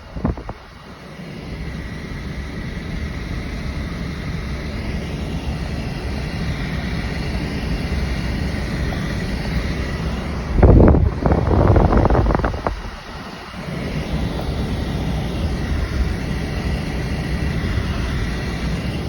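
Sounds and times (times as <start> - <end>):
wind gust on microphone: 0.0 - 0.6, 9.4 - 16.3
wind noise: 0.0 - 0.8, 7.9 - 19.0
faint high whine: 0.0 - 19.0
vehicle running rumble: 5.6 - 19.0.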